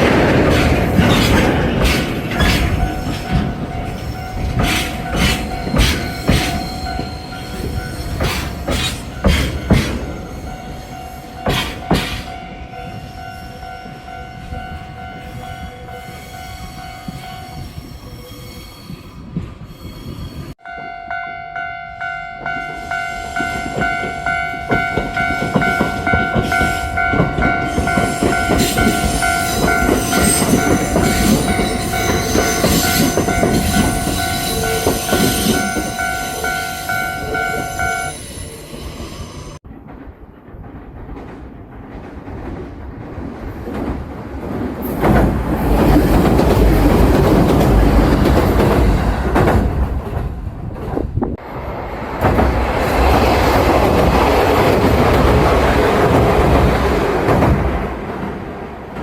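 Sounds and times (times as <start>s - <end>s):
train wheels clacking over rail joints: 0.0s - 12.4s, 23.3s - 36.5s, 39.6s - 51.4s, 52.0s - 59.0s
steady high ringing tone: 20.6s - 38.7s.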